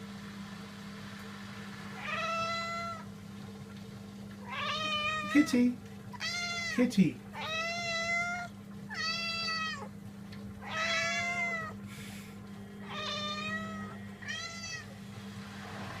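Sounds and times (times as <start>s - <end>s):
steady low hum: 0.0s - 16.0s
cats meowing: 2.0s - 3.0s, 4.4s - 5.5s, 6.1s - 6.8s, 7.4s - 10.0s, 10.6s - 11.8s, 12.8s - 14.9s.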